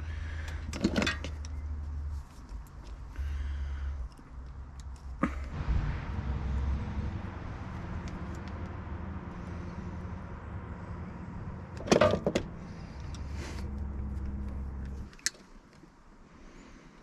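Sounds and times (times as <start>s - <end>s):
riding mower engine running: 5.2s - 15.1s.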